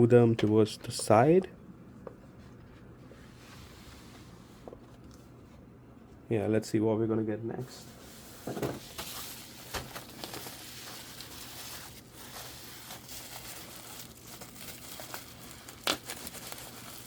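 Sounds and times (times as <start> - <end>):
packing material crinkling: 8.8 - 17.0.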